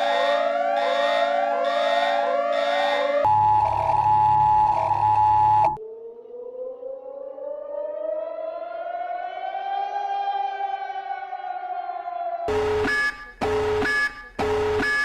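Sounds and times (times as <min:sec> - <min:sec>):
warning siren wailing: 0:00.0 - 0:15.0
two-tone alert signal: 0:12.5 - 0:15.0.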